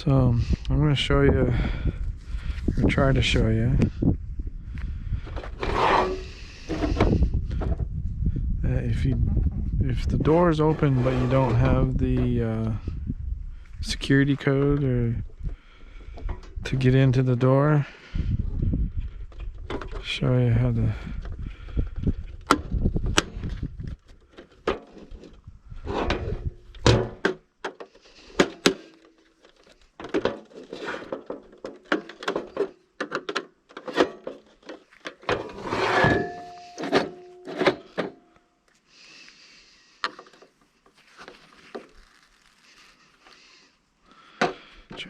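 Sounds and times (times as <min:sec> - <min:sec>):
tools and metal parts clanking: 0:24.3 - 0:38.4
ringing metal hits: 0:35.9 - 0:37.7.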